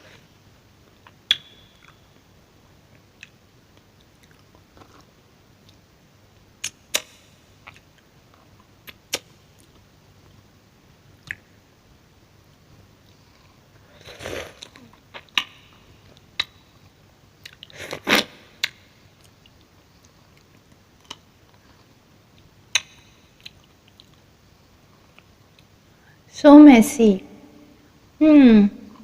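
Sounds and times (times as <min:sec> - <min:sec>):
quiet chewing: 0:02.9 - 0:05.8, 0:18.6 - 0:24.3
wet mouth clicks and smacks: 0:11.2 - 0:11.5.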